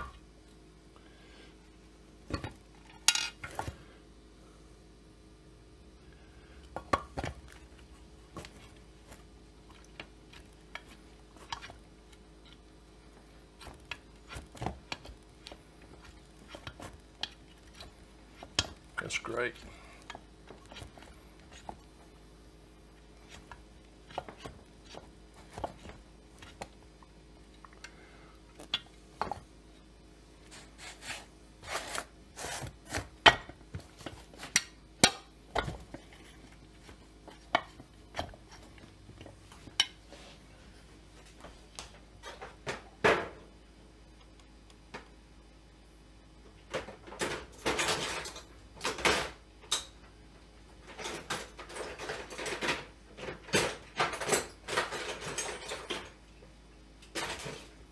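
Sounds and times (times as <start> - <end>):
scraping and rustling: 30.4 - 33.1.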